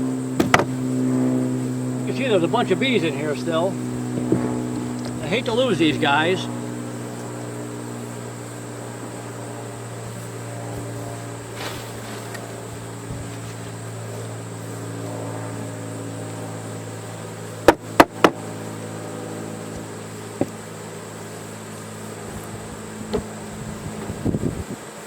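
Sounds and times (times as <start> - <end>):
honeybees buzzing: 0.0 - 25.0
sharp knocks: 0.4 - 0.8, 4.1 - 4.9, 17.6 - 18.4, 20.4 - 20.6.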